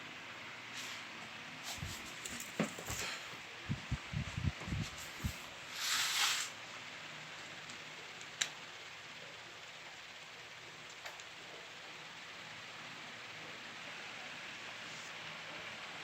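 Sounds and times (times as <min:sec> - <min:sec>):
steady hiss: 0:00.0 - 0:16.0
rustle: 0:04.8 - 0:06.6.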